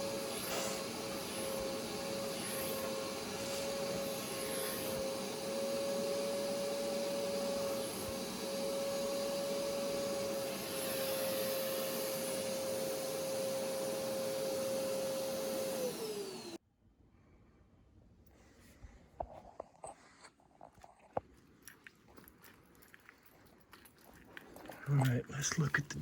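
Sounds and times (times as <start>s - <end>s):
suction hiss: 0.0s - 8.2s
carpet cleaner motor whine: 0.0s - 16.6s.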